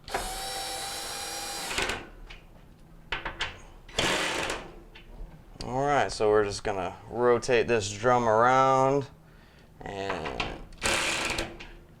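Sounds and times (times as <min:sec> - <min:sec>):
power driver whining: 0:00.0 - 0:02.1.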